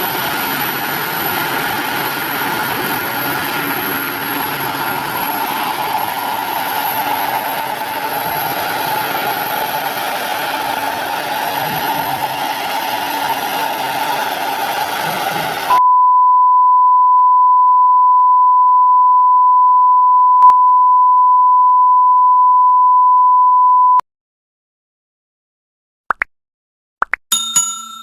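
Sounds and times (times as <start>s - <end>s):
turbine helicopter whine: 0.0s - 15.8s.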